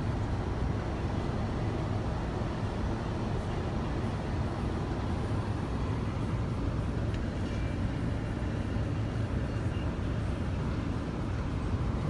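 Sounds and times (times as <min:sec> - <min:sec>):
low rumbling background noise: 0:00.0 - 0:12.0
faint tick: 0:07.0 - 0:07.6.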